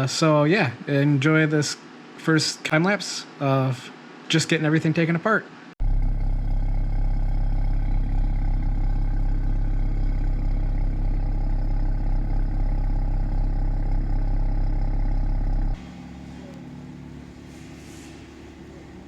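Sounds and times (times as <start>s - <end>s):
car engine idling: 5.8s - 19.0s.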